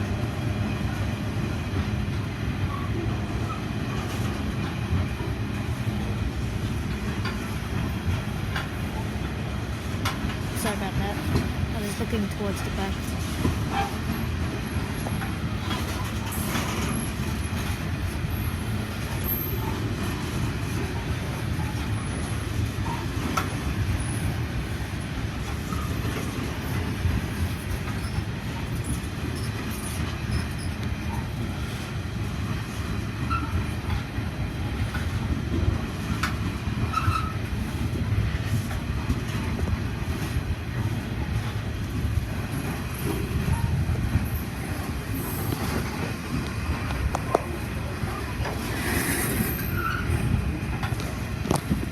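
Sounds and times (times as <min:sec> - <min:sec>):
train wheels clattering on rails: 0:00.0 - 0:51.9
faint wheel squeals: 0:36.9 - 0:37.4, 0:48.7 - 0:50.4.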